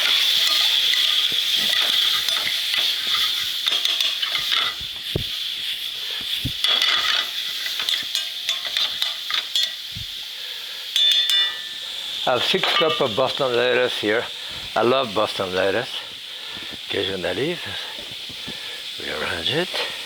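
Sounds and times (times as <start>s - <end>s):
utensil clinking and scraping pan: 0.0s - 9.9s, 11.0s - 14.0s
shrimp sizzling in a pan: 0.0s - 20.0s.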